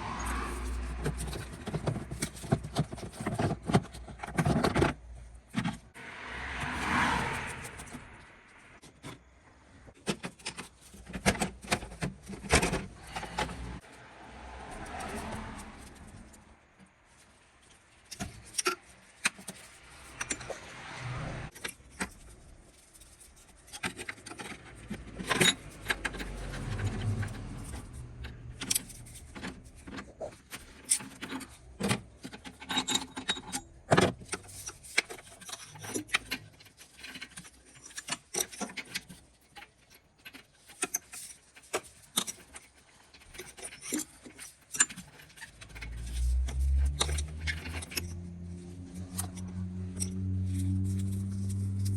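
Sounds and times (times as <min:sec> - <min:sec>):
metal tools clinking and scraping: 0:17.2 - 0:20.8, 0:21.5 - 0:51.9.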